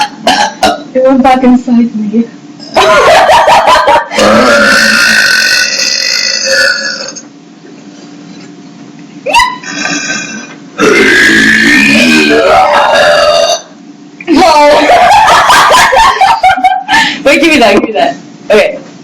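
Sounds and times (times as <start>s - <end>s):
girls burping: 4.1s - 7.2s, 9.6s - 13.7s.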